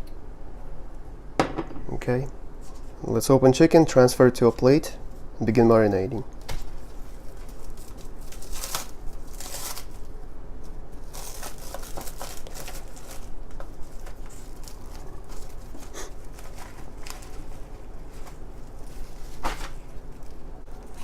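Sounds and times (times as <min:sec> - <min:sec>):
plastic packaging tearing and crinkling: 0:06.5 - 0:10.1, 0:11.0 - 0:21.0.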